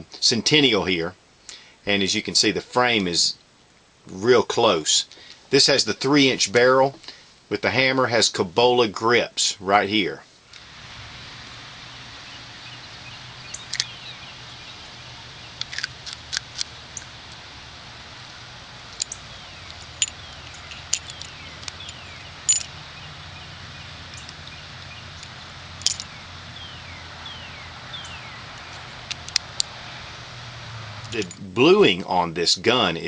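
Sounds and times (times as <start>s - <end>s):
steady low hum: 0.0s - 33.0s
bird chirps: 11.8s - 15.7s, 19.0s - 28.9s
revolver metallic clicks: 13.4s - 14.1s, 18.9s - 22.7s, 24.1s - 26.2s, 28.0s - 29.8s.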